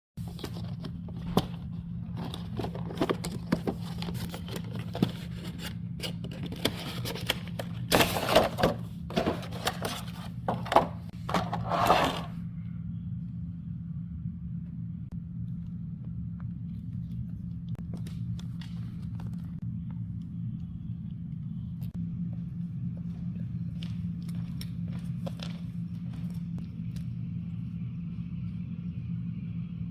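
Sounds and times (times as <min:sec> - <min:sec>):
steady low hum: 0:00.2 - 0:29.9
packaging being opened: 0:00.3 - 0:10.4.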